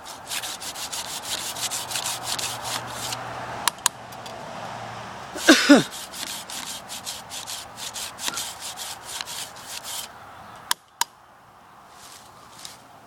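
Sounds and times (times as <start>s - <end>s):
hand saw cutting wood: 0.0s - 3.8s, 5.4s - 10.1s.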